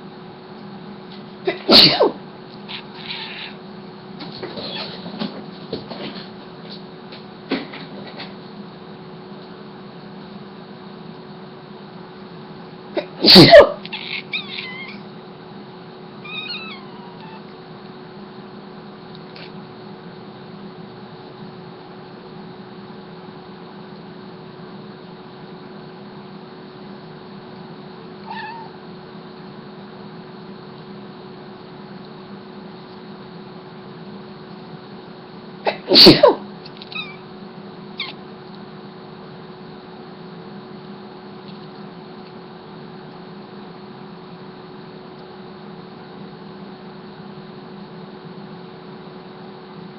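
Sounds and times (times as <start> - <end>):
steady low hum: 0.0 - 49.9
sneeze: 1.4 - 2.2, 13.0 - 14.1, 35.6 - 36.5
young cat meowing: 2.6 - 3.6, 13.8 - 15.1, 16.2 - 17.5, 28.2 - 28.8, 36.8 - 37.2, 38.0 - 38.2.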